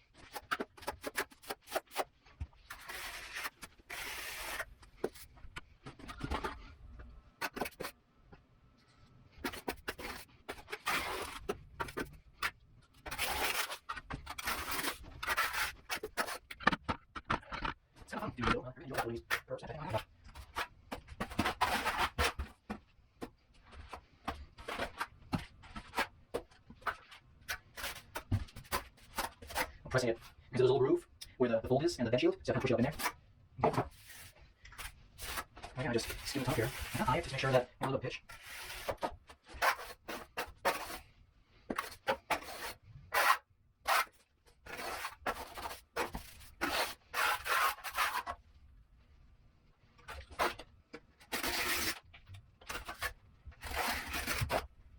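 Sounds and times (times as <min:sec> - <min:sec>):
trowels scraping wet mortar: 0:02.7 - 0:05.2, 0:09.4 - 0:16.6, 0:32.6 - 0:41.0, 0:41.7 - 0:48.4, 0:51.3 - 0:52.0, 0:52.7 - 0:54.7.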